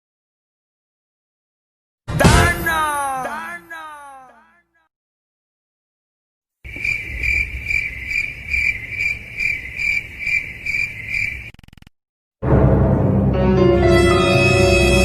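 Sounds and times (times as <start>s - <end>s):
cricket chirping: 6.7s - 11.9s.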